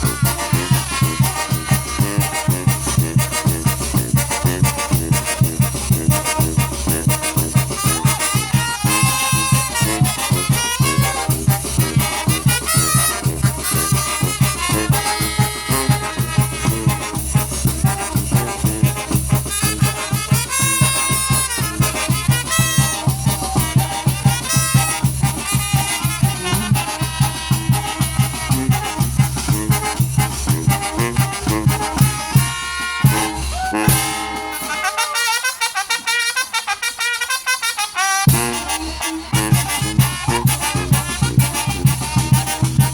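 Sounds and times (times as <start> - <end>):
brass band playing: 0.0 - 42.9.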